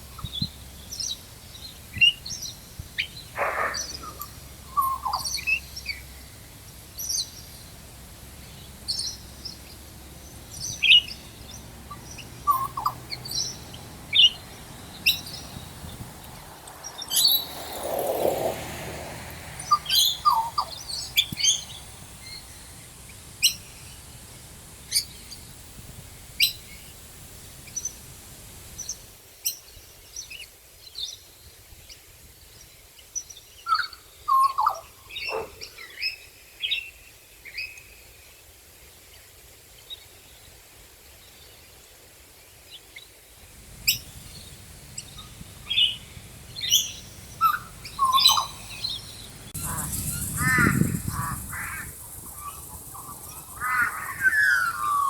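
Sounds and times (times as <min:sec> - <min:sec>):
faint background hiss: 0:00.0 - 0:55.0
birds chirping and whistling: 0:03.0 - 0:05.6, 0:10.7 - 0:18.6, 0:19.6 - 0:22.7, 0:43.9 - 0:55.0.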